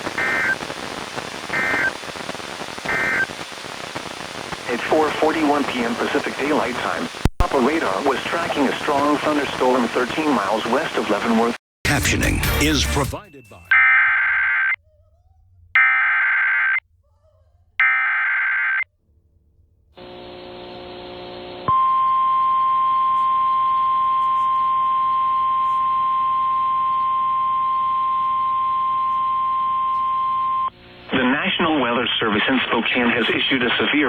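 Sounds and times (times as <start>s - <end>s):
faint hum: 0.0s - 11.6s, 18.9s - 34.0s
harsh digital data bursts: 1.5s - 2.0s, 2.9s - 3.4s, 15.8s - 16.8s.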